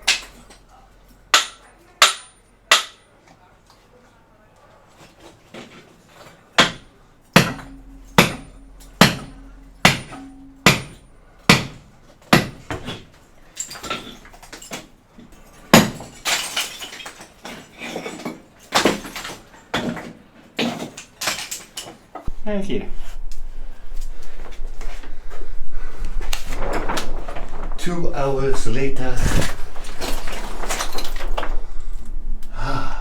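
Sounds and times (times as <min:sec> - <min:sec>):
hammer striking a wall: 0:01.3 - 0:03.1, 0:06.6 - 0:13.2, 0:15.7 - 0:16.8
material crumbling and scraping: 0:26.1 - 0:31.6.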